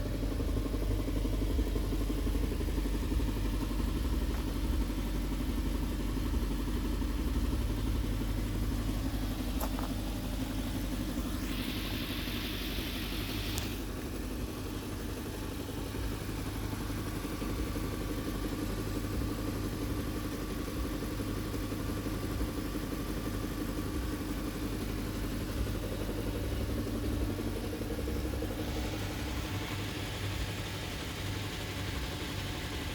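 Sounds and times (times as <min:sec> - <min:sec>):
car engine idling: 0:00.0 - 0:32.9
hiss: 0:10.5 - 0:13.9.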